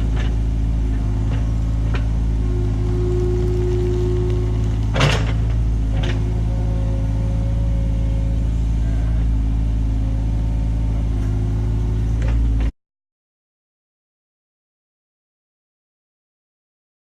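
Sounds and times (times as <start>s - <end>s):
diesel engine running: 0.0s - 12.7s.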